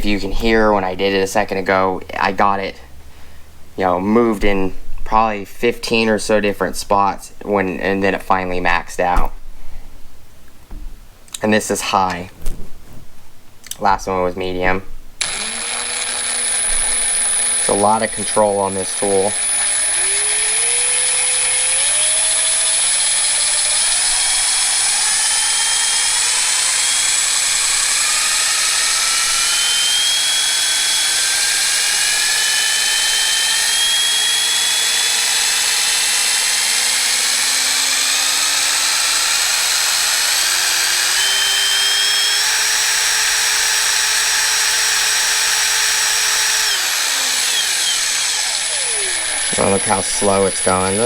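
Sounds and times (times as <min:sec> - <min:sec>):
impact wrench motor whine: 0:15.2 - 0:51.0.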